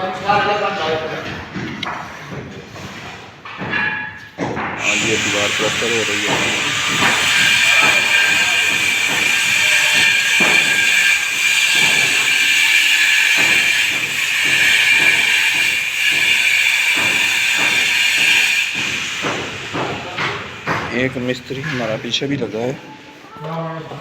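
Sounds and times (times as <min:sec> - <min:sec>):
steady loud hiss: 0:04.8 - 0:22.1.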